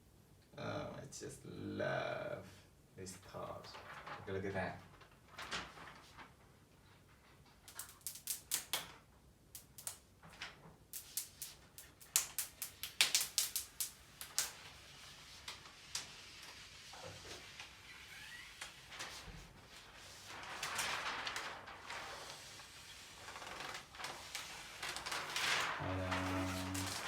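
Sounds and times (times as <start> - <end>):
sharp irregular clicks and crackles: 7.6 - 9.0, 9.6 - 10.0, 11.0 - 14.6.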